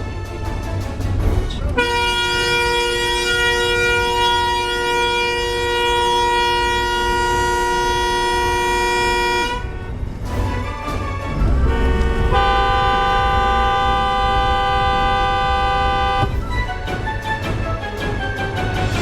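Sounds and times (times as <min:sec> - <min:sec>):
car horn long blast: 0:01.8 - 0:10.1, 0:11.3 - 0:16.3.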